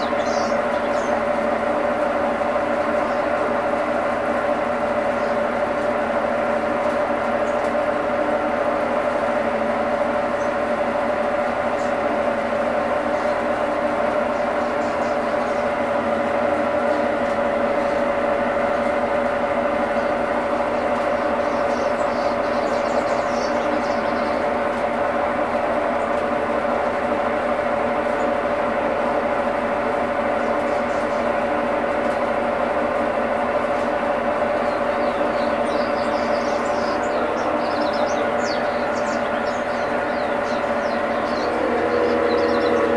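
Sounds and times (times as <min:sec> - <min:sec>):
washing machine humming: 0:00.0 - 0:42.9.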